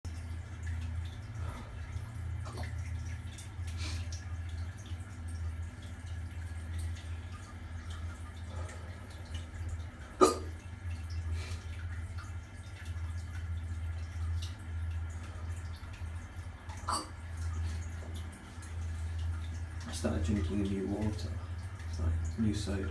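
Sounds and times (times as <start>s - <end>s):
steady low hum: 0.1s - 22.9s
man hiccupping: 10.2s - 10.5s.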